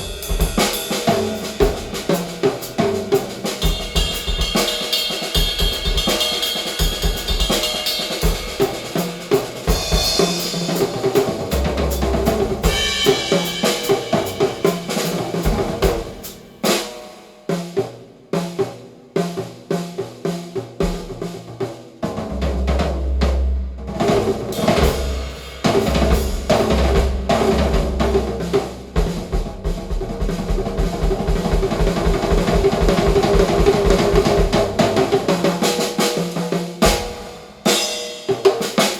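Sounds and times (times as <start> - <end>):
drum kit playing: 0.0 - 38.9
deep bass drum: 22.4 - 34.9.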